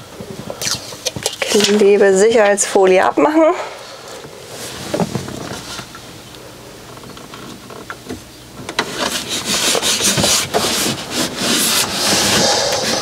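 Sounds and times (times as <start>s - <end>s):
hands rubbing pad on surface: 9.1s - 13.0s.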